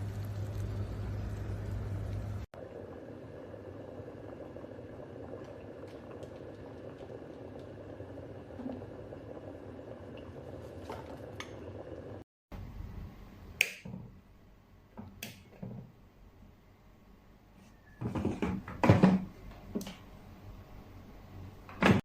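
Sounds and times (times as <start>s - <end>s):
kettle heating water hiss: 0.0s - 13.8s.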